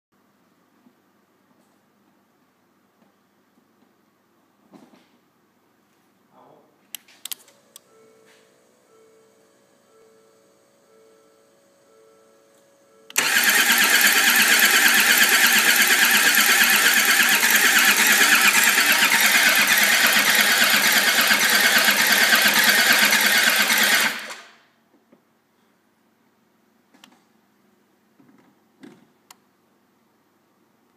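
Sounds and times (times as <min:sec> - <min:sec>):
engine cranking on starter motor: 0:13.1 - 0:24.6.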